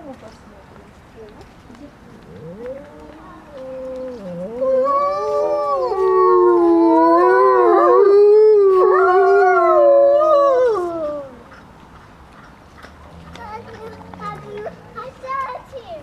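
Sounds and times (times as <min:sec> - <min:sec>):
wolves howling: 0:02.3 - 0:11.4.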